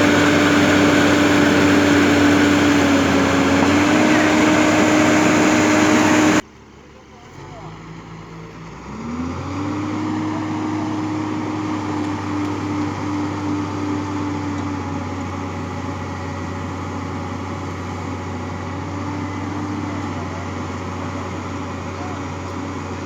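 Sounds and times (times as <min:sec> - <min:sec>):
steady whine: 0:00.0 - 0:06.4
excavator engine running: 0:00.0 - 0:06.8, 0:08.0 - 0:23.0.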